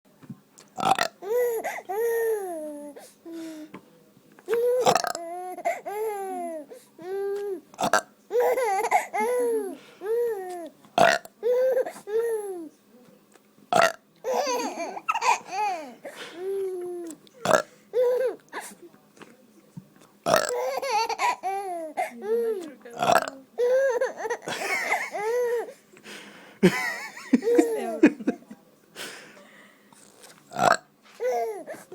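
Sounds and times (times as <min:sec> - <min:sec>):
man making fake burps: 0:00.8 - 0:01.1, 0:04.8 - 0:05.2, 0:13.7 - 0:14.0, 0:17.5 - 0:17.7, 0:20.3 - 0:20.6, 0:23.0 - 0:23.3, 0:30.5 - 0:30.9.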